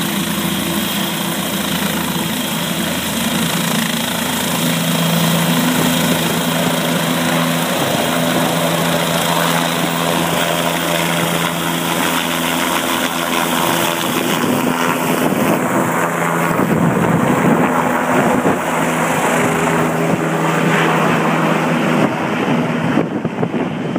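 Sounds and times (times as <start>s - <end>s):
helicopter rotor and engine hum: 0.0s - 23.9s.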